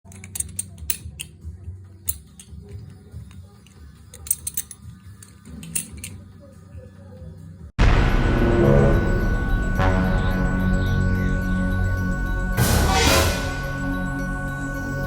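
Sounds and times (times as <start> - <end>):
knife handles clicking and clacking: 0.0 - 1.4, 2.0 - 6.3.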